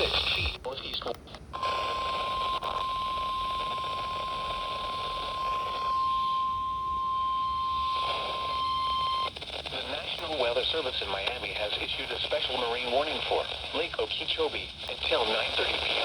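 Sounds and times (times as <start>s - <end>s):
radio hiss: 0.0s - 16.0s
steady alarm beep: 1.6s - 9.3s.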